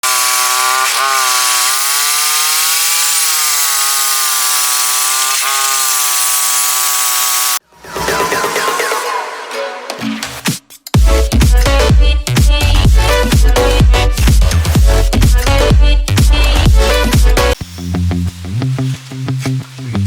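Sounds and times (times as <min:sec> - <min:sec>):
chainsaw running at high revs: 0:00.0 - 0:07.6
electronic music: 0:07.6 - 0:18.2.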